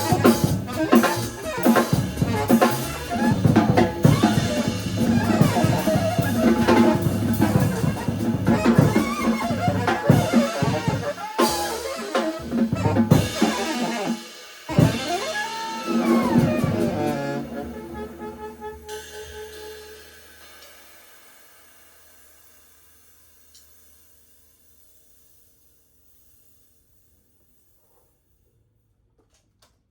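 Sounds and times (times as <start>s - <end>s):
saxophone melody: 0.0s - 20.2s
jazz trio playing: 0.0s - 21.0s.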